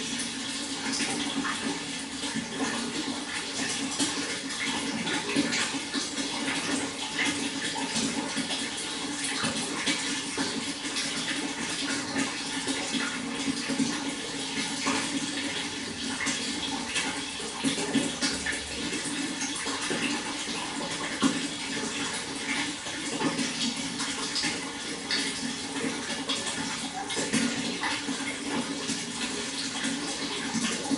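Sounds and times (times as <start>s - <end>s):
small splashes and drips: 0.0s - 30.9s
water flowing: 0.0s - 30.9s.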